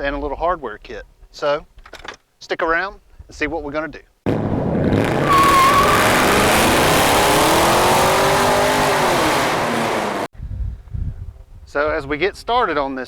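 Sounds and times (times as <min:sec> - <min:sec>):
car engine revving past: 0:04.4 - 0:10.3.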